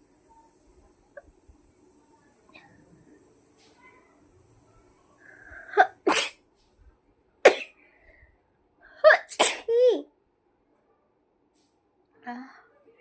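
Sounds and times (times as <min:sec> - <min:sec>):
woman sneezing: 0:09.1 - 0:09.8.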